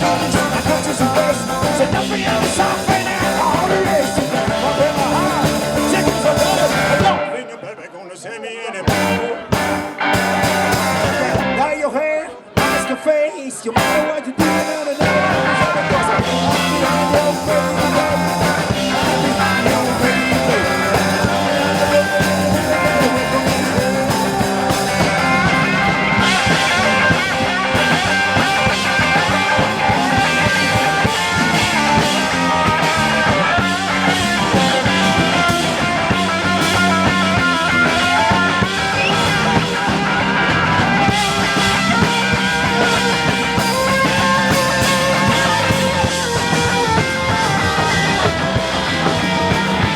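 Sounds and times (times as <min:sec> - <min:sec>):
rock band playing live: 0:00.0 - 0:07.4, 0:08.8 - 0:49.9.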